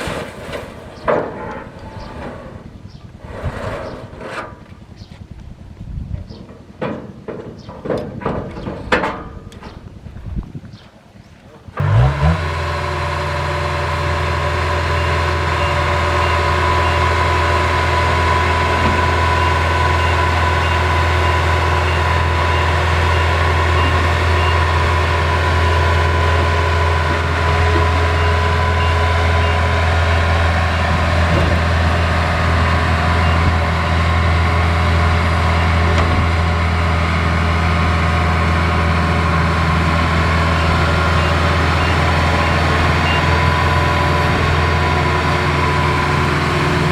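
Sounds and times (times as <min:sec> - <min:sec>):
combine harvester engine drone: 0:11.6 - 0:46.9
steady whine: 0:11.8 - 0:46.9.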